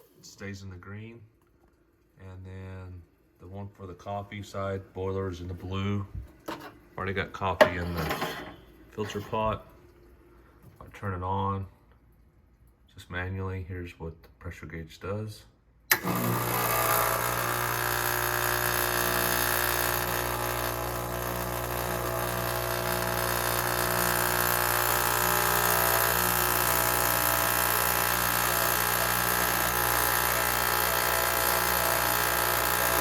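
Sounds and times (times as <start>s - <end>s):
espresso machine pump humming: 15.9s - 33.0s.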